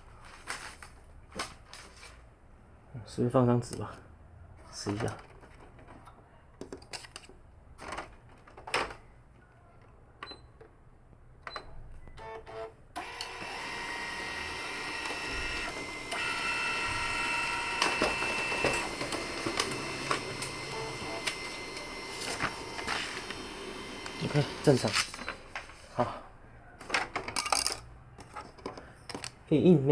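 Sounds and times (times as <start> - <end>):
printer motors whining: 12.2 - 25.4
printer clicks: 13.0 - 25.6.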